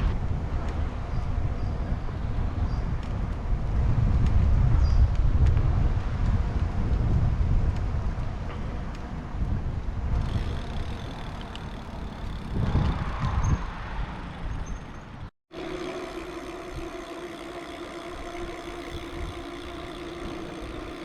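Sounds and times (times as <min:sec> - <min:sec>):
wind rumbling over microphone: 0:00.0 - 0:15.3
bicycle running noise: 0:00.0 - 0:21.0
faint steady hum: 0:15.6 - 0:21.0.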